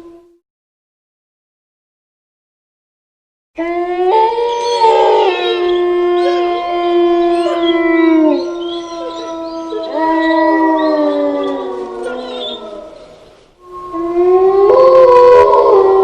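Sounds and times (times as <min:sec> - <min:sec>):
wolves howling: 0:03.6 - 0:16.0.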